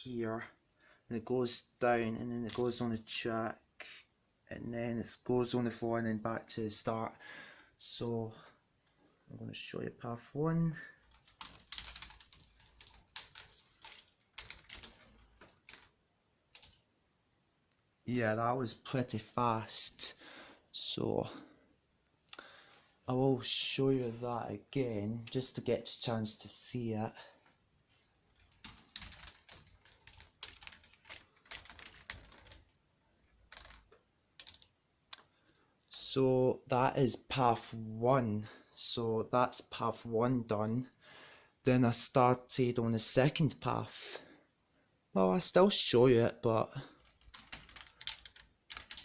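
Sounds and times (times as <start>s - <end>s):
ball rattling down plastic track: 11.0s - 16.8s, 28.4s - 34.7s, 47.0s - 49.0s.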